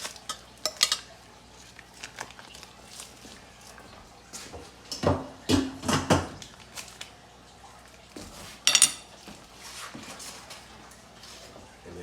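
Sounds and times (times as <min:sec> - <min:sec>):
dishes and cutlery clattering: 0:00.0 - 0:01.1, 0:04.9 - 0:06.4, 0:08.4 - 0:09.4.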